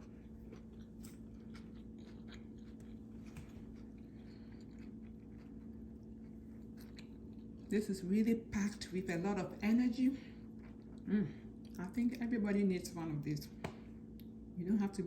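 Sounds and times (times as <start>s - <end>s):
person chewing sandwich: 0.0s - 7.7s, 10.4s - 11.8s
low steady hum: 0.0s - 15.0s.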